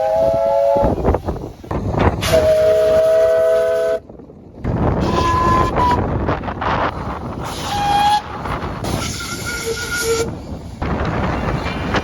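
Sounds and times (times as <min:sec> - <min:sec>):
rumble of a moving train: 0:00.0 - 0:12.0
locomotive chord horn: 0:02.2 - 0:04.0, 0:05.0 - 0:06.0.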